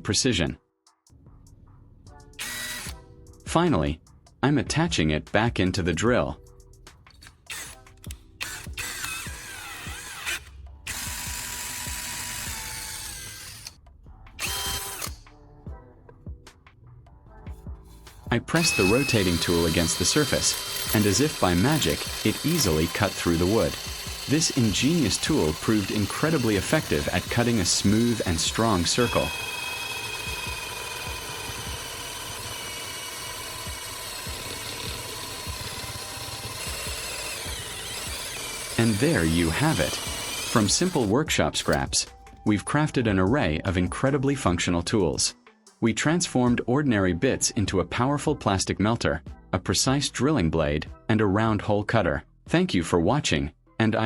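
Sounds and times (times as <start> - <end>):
power drill motor whine: 2.4 - 3.0, 7.2 - 13.8, 14.4 - 15.3, 18.1 - 42.4.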